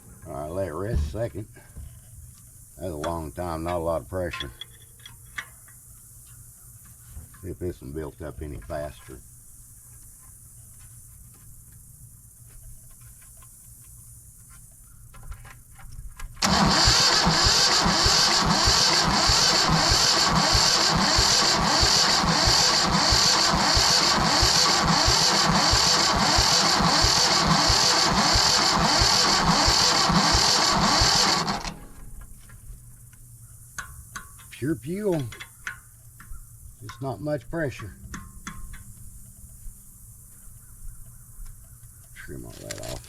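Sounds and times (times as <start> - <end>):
diesel engine cranking: 16.4 - 32.4, 42.2 - 43.0.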